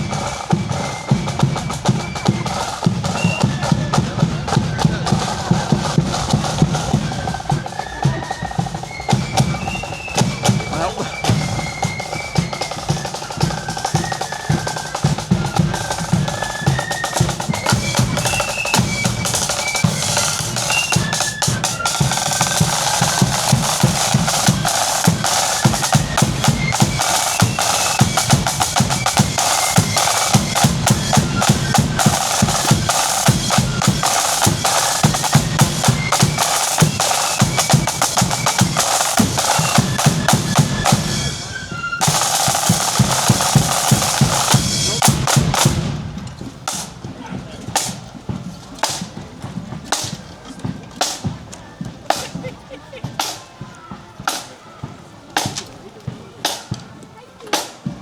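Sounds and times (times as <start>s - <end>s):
flutes playing a tune: 0.0s - 46.0s
snare drum rolls: 0.0s - 58.0s.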